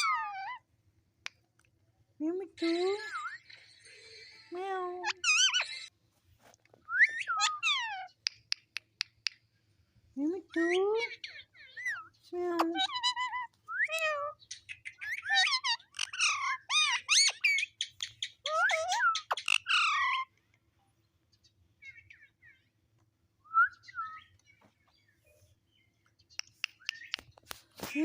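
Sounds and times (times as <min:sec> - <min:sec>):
parrot chattering and whistling: 0:00.0 - 0:00.6, 0:02.6 - 0:05.9, 0:06.9 - 0:08.4, 0:12.7 - 0:20.3.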